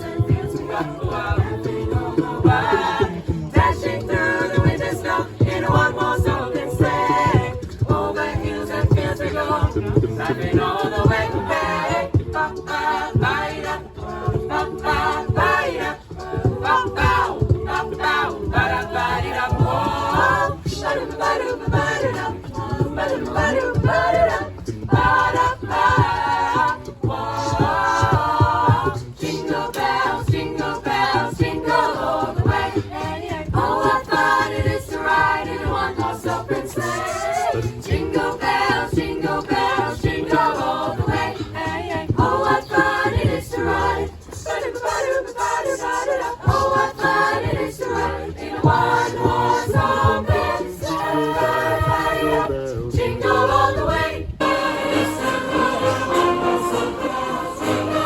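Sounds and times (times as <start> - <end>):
pulsing low accompaniment: 0.0 - 45.1, 46.4 - 58.0
choir singing: 0.0 - 58.0.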